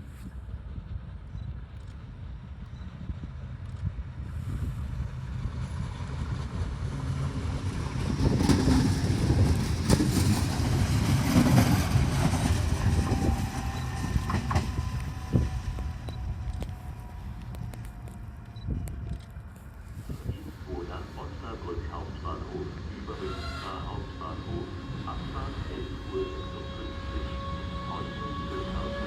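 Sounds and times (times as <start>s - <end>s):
electric train rumbling on rails: 0.0s - 29.0s
train wheel knocks: 8.2s - 16.8s.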